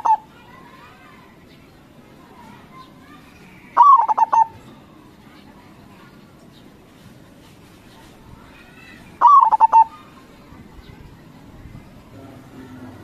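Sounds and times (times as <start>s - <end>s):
dove cooing: 0.0s - 0.2s, 3.8s - 4.6s, 9.2s - 10.1s
distant bird chirps: 2.5s - 6.8s, 8.5s - 11.1s.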